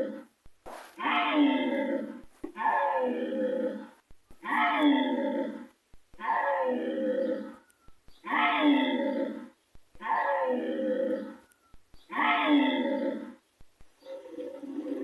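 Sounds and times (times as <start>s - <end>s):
dinosaur growling roar: 12.2s - 13.3s.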